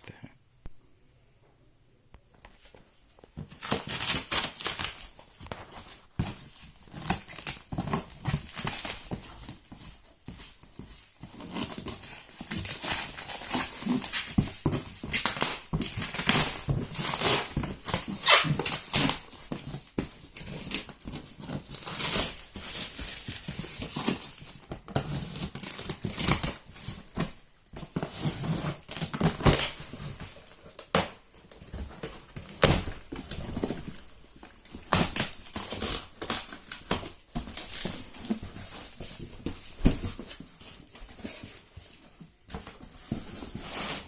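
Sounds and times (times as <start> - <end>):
packing material crinkling and tearing: 3.4 - 44.0.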